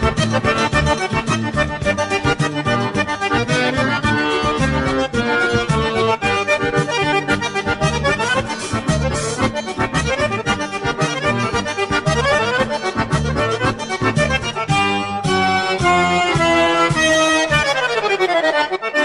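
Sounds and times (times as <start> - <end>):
lively accordion music: 0.0 - 19.0.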